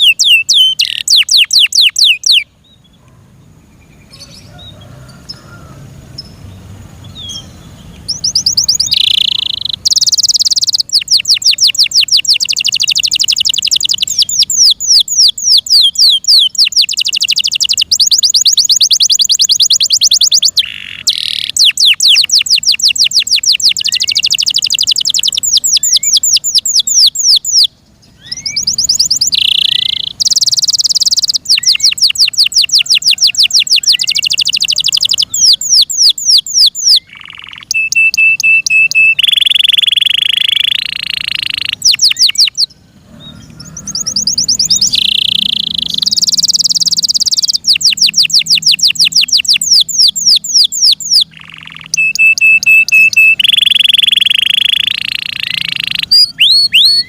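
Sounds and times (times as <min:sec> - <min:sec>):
canary singing trills: 0:00.0 - 0:57.0.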